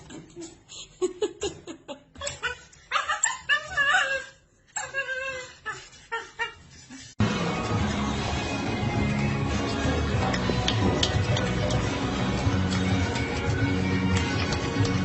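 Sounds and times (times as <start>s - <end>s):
music: 7.2s - 15.0s.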